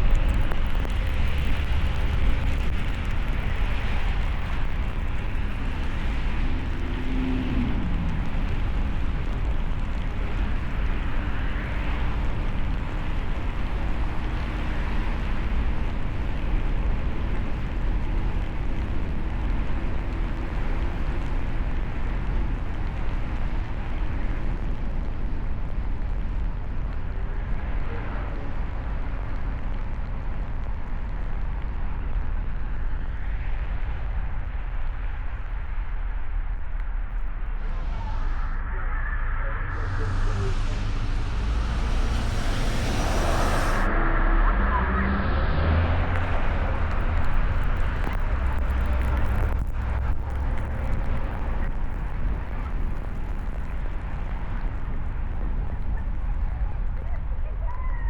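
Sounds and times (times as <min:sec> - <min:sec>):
tyre and road rumble: 0:00.0 - 0:23.4, 0:44.8 - 0:57.3.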